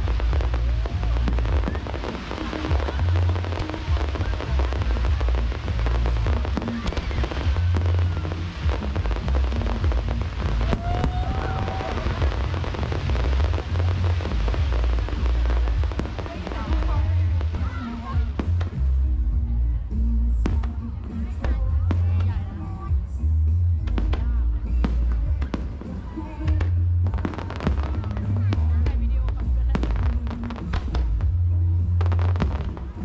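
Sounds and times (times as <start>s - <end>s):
fireworks whistling: 0.0s - 18.8s
fireworks booming: 0.0s - 33.0s
fireworks crackling: 0.0s - 33.0s
music playing: 0.0s - 33.0s.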